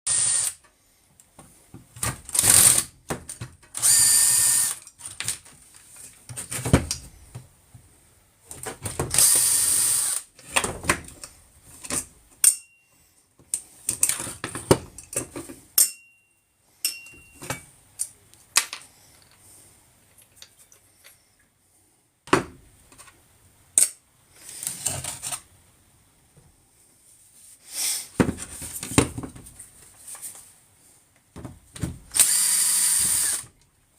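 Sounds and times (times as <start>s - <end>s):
handheld power tool bursts: 0.1s - 0.6s, 2.3s - 2.9s, 3.7s - 4.9s, 9.1s - 10.3s, 32.1s - 33.5s
parts clattering: 16.8s - 21.3s.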